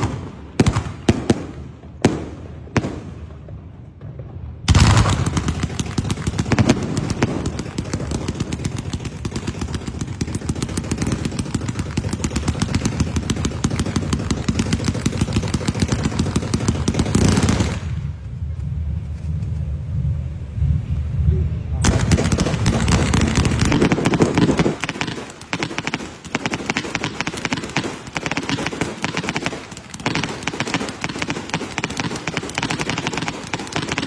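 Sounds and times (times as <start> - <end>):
firecrackers exploding: 0.0 - 18.2, 21.8 - 34.0
low rumble: 16.2 - 24.8.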